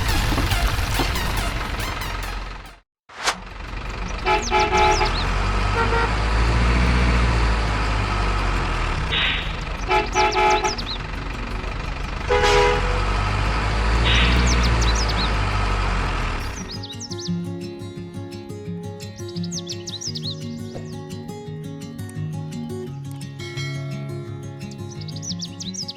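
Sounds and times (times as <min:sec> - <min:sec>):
low engine rumble: 0:00.0 - 0:02.8, 0:03.4 - 0:17.0
truck horn short toots: 0:00.0 - 0:02.8, 0:04.2 - 0:07.1, 0:09.1 - 0:11.0, 0:12.2 - 0:13.4.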